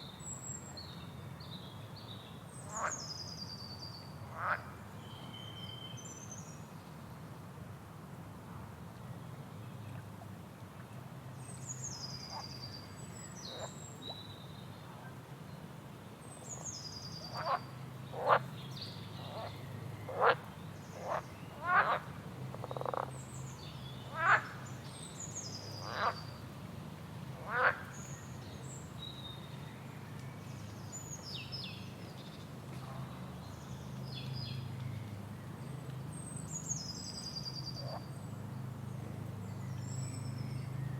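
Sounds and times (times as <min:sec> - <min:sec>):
frogs croaking: 0:02.7 - 0:03.0, 0:04.3 - 0:04.8, 0:17.3 - 0:18.5, 0:20.1 - 0:23.1, 0:24.1 - 0:24.7, 0:25.8 - 0:26.3, 0:27.4 - 0:28.0.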